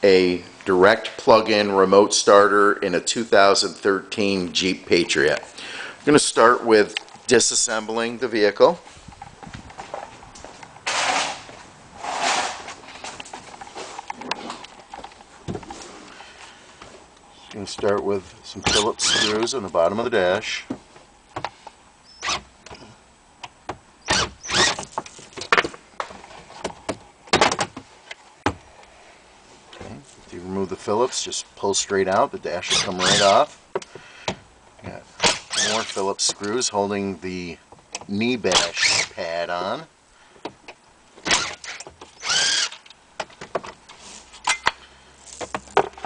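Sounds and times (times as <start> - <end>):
screwdriver scraping whirs: 18.7 - 19.5, 24.1 - 24.9, 32.7 - 33.4, 35.2 - 36.0, 38.6 - 39.1, 41.3 - 42.9
cordless power screwdriver running: 42.2 - 42.7.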